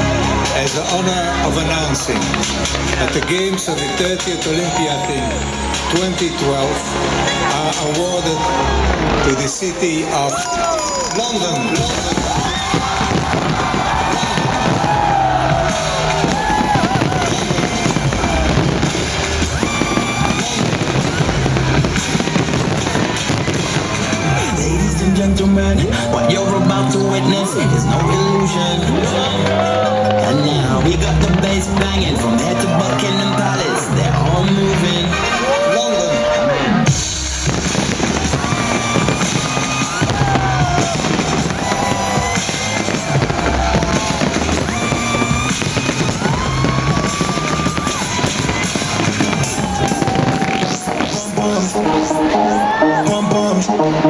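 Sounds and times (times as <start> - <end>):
fireworks banging and crackling: 0.0 - 26.4, 36.8 - 52.4
loud music with drums and bass: 11.8 - 26.0, 36.9 - 51.5.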